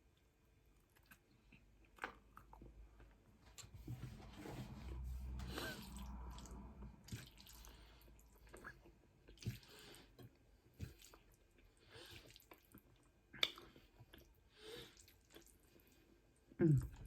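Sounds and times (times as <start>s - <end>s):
wet chewing mouth sounds: 0.8s - 3.7s, 5.4s - 15.9s.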